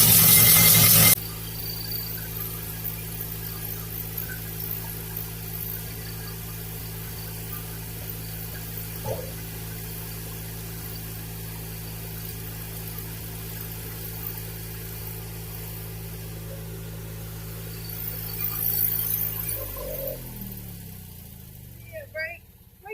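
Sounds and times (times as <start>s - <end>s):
low mechanical hum: 0.0s - 22.9s.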